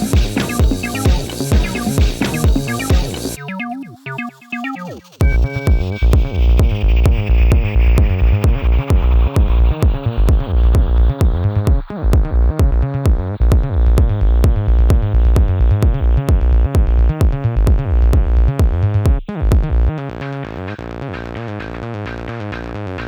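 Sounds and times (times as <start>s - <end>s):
heavy pulsing bass: 0.0s - 3.4s, 5.2s - 23.0s
synth pattern: 0.0s - 17.8s
drum machine beat with ticks: 0.0s - 23.0s.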